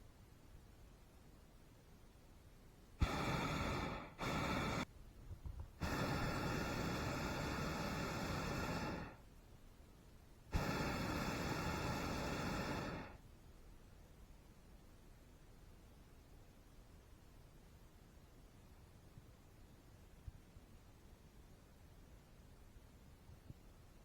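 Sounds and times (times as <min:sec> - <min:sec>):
propane burner blasts: 0:03.0 - 0:09.2, 0:10.5 - 0:13.2.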